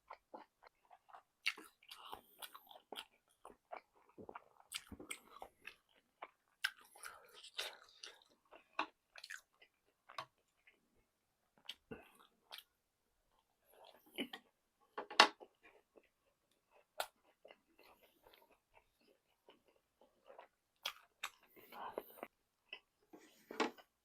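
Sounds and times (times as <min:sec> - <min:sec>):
person chewing food: 0:00.0 - 0:24.0.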